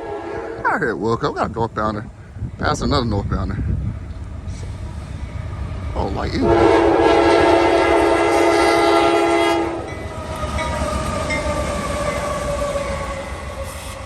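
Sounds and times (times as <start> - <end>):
locomotive air horn chord: 0.0 - 0.6, 6.4 - 10.0
train passing faint tone: 4.1 - 14.0.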